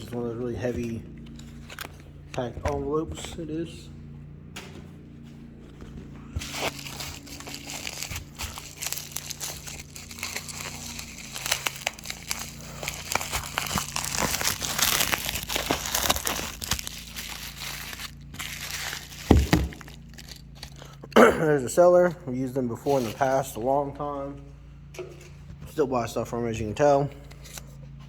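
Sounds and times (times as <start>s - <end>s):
padded envelope crinkling: 0.0s - 3.4s, 5.7s - 21.0s.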